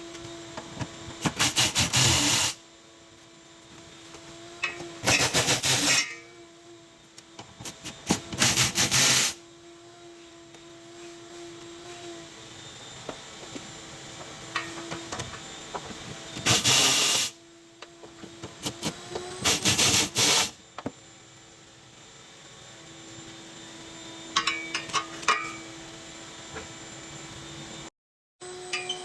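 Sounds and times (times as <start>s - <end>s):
power tool running in bursts: 1.1s - 2.7s, 4.3s - 6.4s, 7.6s - 9.5s, 13.4s - 17.4s, 18.2s - 20.7s.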